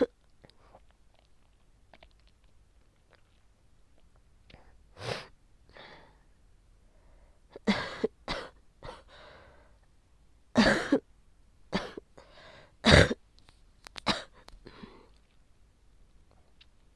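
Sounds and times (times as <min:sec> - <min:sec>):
person coughing harshly: 0:07.6 - 0:09.0, 0:10.6 - 0:11.0, 0:11.8 - 0:12.0, 0:12.8 - 0:13.2, 0:14.1 - 0:14.4.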